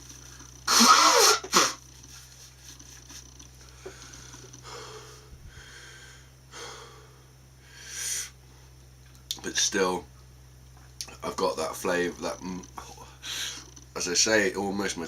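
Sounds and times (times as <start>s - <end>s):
man breathing hard: 3.7s - 8.4s, 13.0s - 13.7s.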